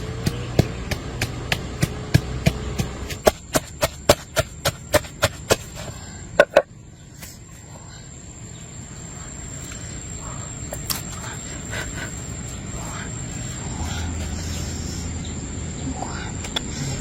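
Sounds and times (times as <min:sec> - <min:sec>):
sharp chopping strikes: 0:00.0 - 0:05.8
low steady hum: 0:00.0 - 0:17.0.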